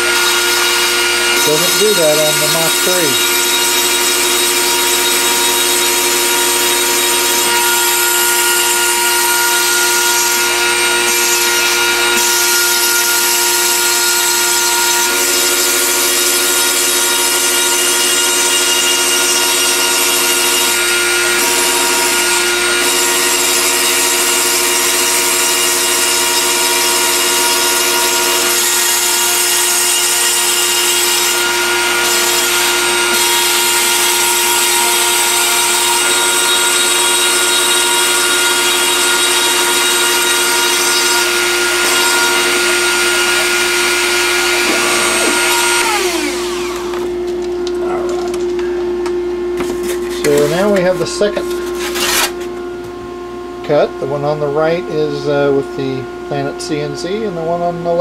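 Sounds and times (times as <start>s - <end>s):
spindle whine: 0.0s - 58.0s
stepper motors humming: 27.0s - 58.0s.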